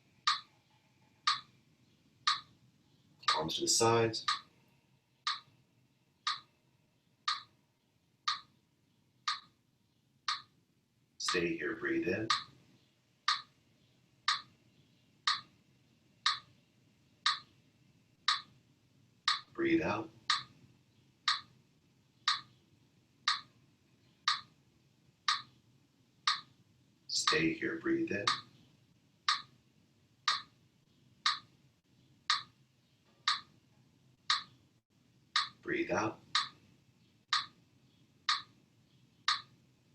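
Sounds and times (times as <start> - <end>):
faint room hum: 0.0 - 39.9
steady clock ticking: 0.2 - 0.6, 1.2 - 1.6, 2.2 - 2.6, 3.2 - 4.5, 5.2 - 5.6, 6.2 - 6.5, 7.2 - 7.6, 8.2 - 8.6, 9.2 - 9.6, 10.2 - 10.6, 11.2 - 12.6, 13.2 - 13.6, 14.2 - 14.6, 15.2 - 15.6, 16.2 - 16.6, 17.2 - 17.6, 18.2 - 18.6, 19.2 - 21.6, 22.2 - 22.6, 23.2 - 23.6, 24.2 - 24.6, 25.2 - 25.6, 26.2 - 28.6, 29.2 - 29.6, 30.2 - 30.6, 31.2 - 31.6, 32.2 - 32.6, 33.2 - 33.6, 34.2 - 34.6, 35.3 - 37.6, 38.2 - 38.6, 39.2 - 39.6
metronome ticking: 0.3 - 0.5, 1.3 - 1.5, 2.3 - 2.5, 4.2 - 4.5, 5.2 - 5.5, 6.2 - 6.5, 7.3 - 7.5, 8.2 - 8.5, 9.3 - 9.5, 10.3 - 10.5, 11.2 - 11.5, 12.2 - 12.5, 13.3 - 13.5, 14.3 - 14.5, 15.3 - 15.5, 16.3 - 16.5, 17.2 - 17.5, 18.3 - 18.5, 19.3 - 19.6, 20.3 - 20.6, 21.3 - 21.5, 22.2 - 22.5, 23.2 - 23.5, 24.3 - 24.5, 25.3 - 25.5, 26.3 - 26.5, 27.2 - 27.6, 28.2 - 28.5, 29.3 - 29.5, 30.3 - 30.5, 31.3 - 31.5, 32.3 - 32.6, 33.3 - 33.5, 34.3 - 34.5, 35.3 - 35.6, 36.3 - 36.6, 37.3 - 37.6, 38.3 - 38.5, 39.3 - 39.5.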